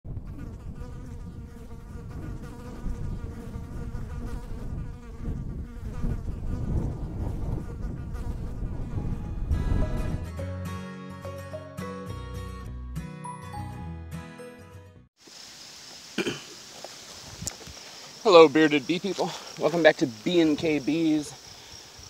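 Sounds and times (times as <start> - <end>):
honey bees buzzing: 0.2 - 9.2
music: 9.0 - 15.1.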